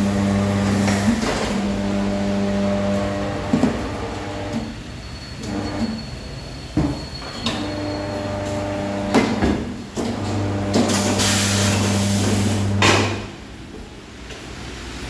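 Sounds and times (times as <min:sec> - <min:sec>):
machine motor humming: 0:00.0 - 0:04.8
compressed air hissing: 0:10.9 - 0:12.8.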